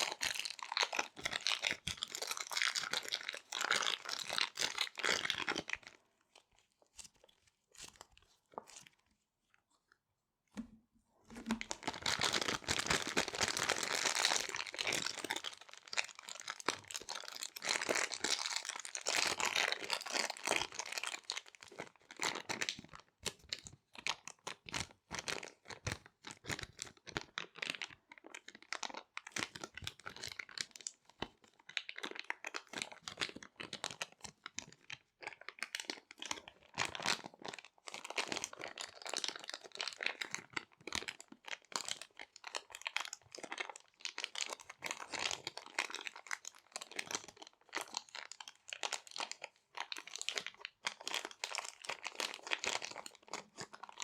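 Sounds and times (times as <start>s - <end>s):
plastic bags crinkling: 11.3s - 18.9s.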